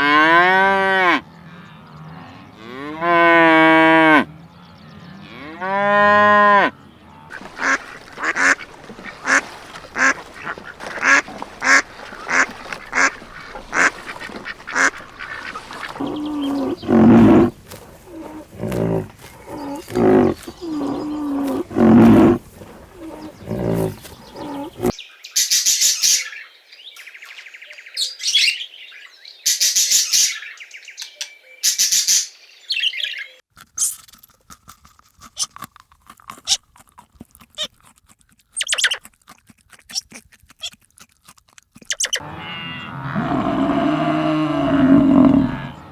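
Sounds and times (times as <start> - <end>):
cow mooing: 0.0 - 7.3, 15.9 - 24.9, 42.2 - 45.9
nasal quacking and honking calls: 7.2 - 24.9.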